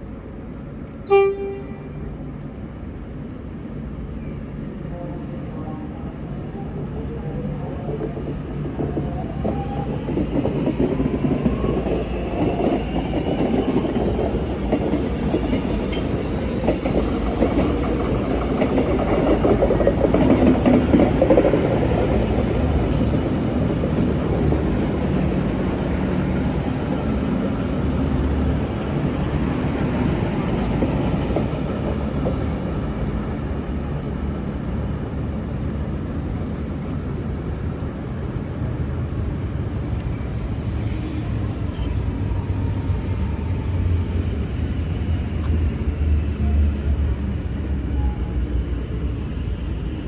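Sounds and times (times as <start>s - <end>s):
train engine and rail rumble: 0.0s - 50.0s.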